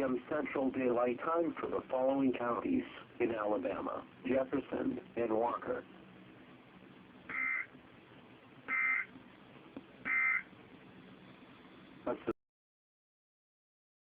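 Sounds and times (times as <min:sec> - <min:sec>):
digital data tone bursts: 0:07.3 - 0:07.7, 0:08.7 - 0:09.1, 0:10.1 - 0:10.5.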